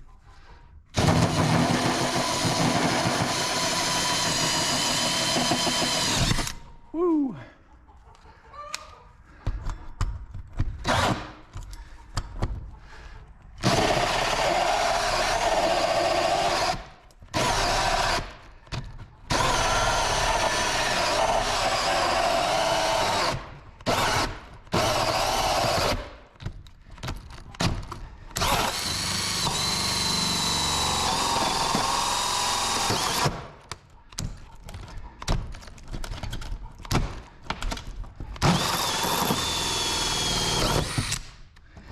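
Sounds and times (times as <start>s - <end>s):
power tool cutting: 1.0s - 6.6s, 17.4s - 18.3s, 19.3s - 26.1s, 28.4s - 33.4s, 38.4s - 41.3s.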